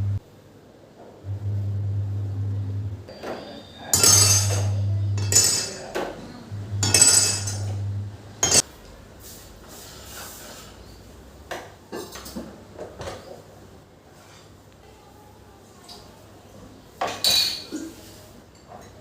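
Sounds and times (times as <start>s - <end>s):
low steady hum: 0.0s - 0.2s, 1.2s - 8.6s
dishes and utensils clinking: 3.1s - 8.7s, 17.0s - 17.8s.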